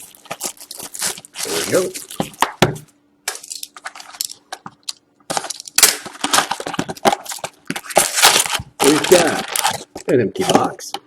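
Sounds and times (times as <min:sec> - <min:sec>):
foil packs rustling and crackling: 0:00.0 - 0:02.5, 0:05.3 - 0:10.8
packs tapping onto table: 0:04.6 - 0:10.9.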